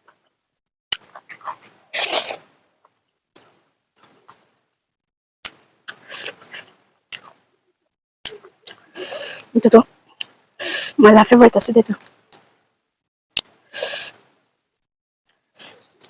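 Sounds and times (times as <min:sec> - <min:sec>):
wet mouth clicks and smacks: 0:00.9 - 0:01.7, 0:13.4 - 0:13.6
chewing or slurping: 0:00.9 - 0:02.4, 0:05.9 - 0:07.4.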